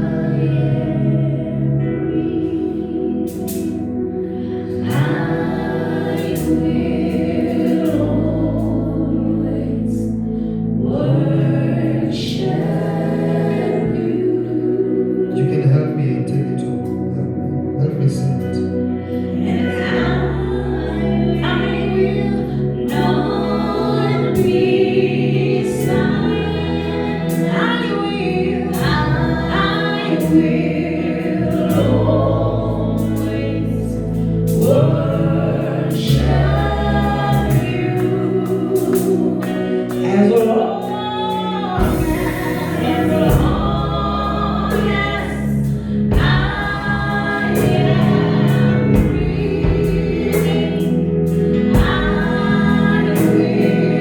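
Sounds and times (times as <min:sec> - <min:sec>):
choir singing: 0:00.0 - 0:54.0
held bass notes: 0:00.0 - 0:54.0
band accompaniment: 0:35.9 - 0:54.0.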